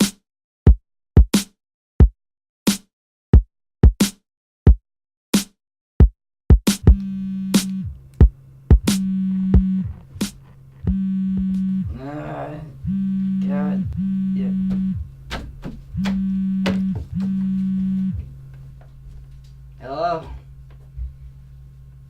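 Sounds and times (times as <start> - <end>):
drum machine hits: 5.4 - 11.6, 13.9 - 17.4
buzzy synth note: 6.8 - 15.3, 15.9 - 18.5.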